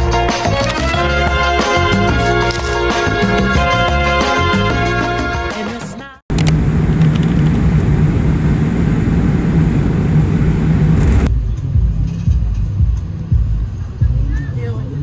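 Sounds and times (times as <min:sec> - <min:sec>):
vehicle engine and road rumble: 0:06.3 - 0:11.3.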